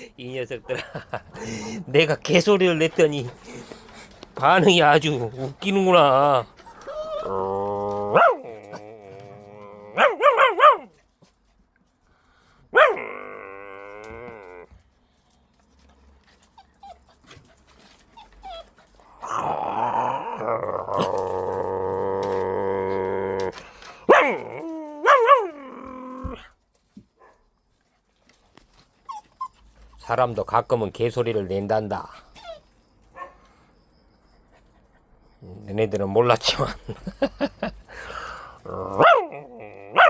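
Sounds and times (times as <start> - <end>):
person imitating a dog: 6.0 - 10.5, 12.8 - 14.8, 19.1 - 26.5, 38.6 - 40.0.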